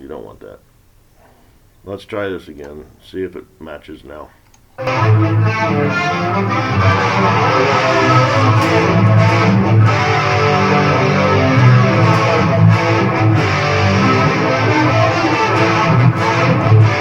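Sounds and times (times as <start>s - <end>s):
layered guitars with reverb: 4.8s - 17.0s.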